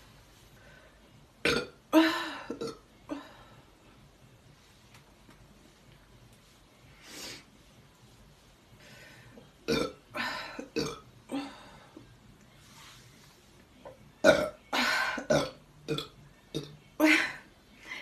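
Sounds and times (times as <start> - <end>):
person burping: 1.4 - 2.8, 9.7 - 11.5, 14.2 - 17.1.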